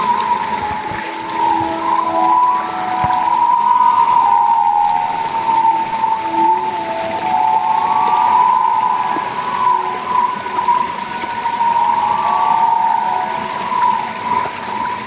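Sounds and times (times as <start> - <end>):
animals calling at night: 0.0 - 15.0
steady hiss: 0.0 - 15.0.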